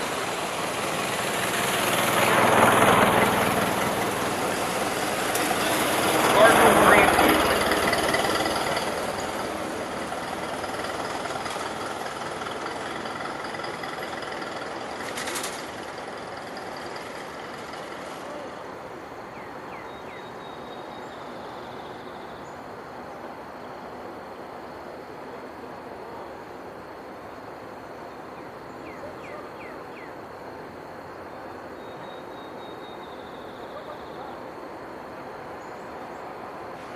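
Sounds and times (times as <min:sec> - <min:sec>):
car engine passing: 0:00.0 - 0:20.6
faint chirps: 0:31.2 - 0:34.6.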